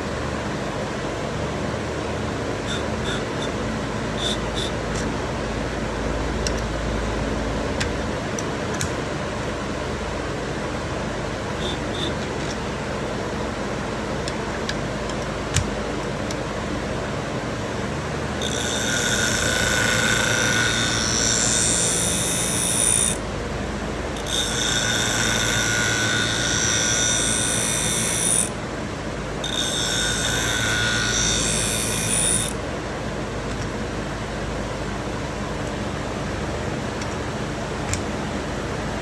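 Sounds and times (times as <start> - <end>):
sharpening machine humming: 2.5 - 34.3
blade grinding on wheel: 2.7 - 3.6, 4.2 - 5.1, 11.6 - 12.6, 18.4 - 23.2, 24.2 - 28.6, 29.4 - 32.6.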